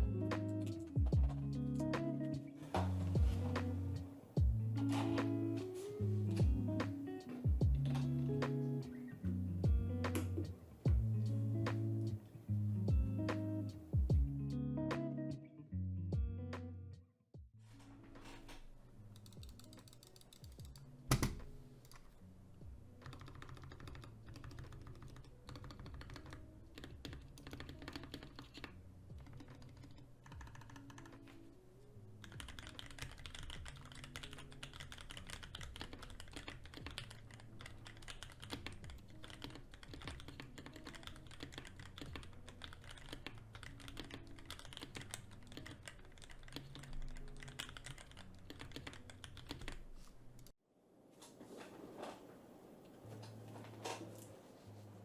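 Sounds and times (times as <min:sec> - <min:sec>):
mechanical keyboard typing: 0:19.2 - 0:22.1, 0:23.0 - 0:31.4, 0:32.2 - 0:49.8.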